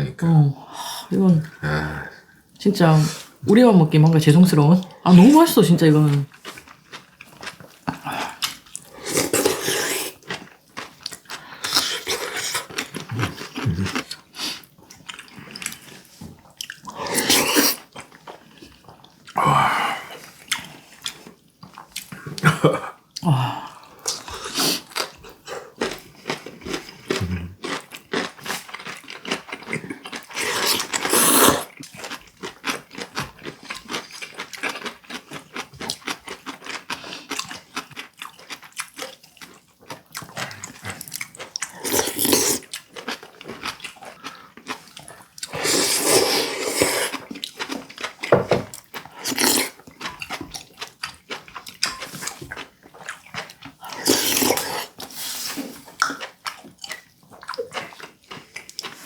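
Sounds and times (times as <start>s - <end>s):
chewing: 6.2s - 19.4s, 20.0s - 22.5s, 23.1s - 59.0s
slurping: 7.8s - 10.4s, 16.6s - 18.0s, 30.2s - 31.8s, 40.2s - 42.8s, 44.9s - 47.5s, 49.1s - 49.8s, 53.8s - 56.2s.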